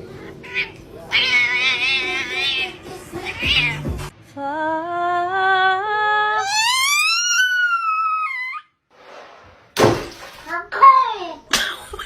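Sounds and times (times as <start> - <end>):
cat yowling: 0.4 - 3.8, 6.4 - 8.7.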